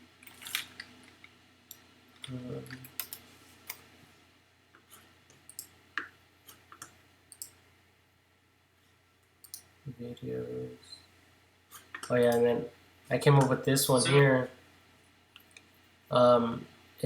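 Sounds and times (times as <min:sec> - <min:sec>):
computer mouse clicking: 0:00.2 - 0:03.9, 0:05.3 - 0:07.6.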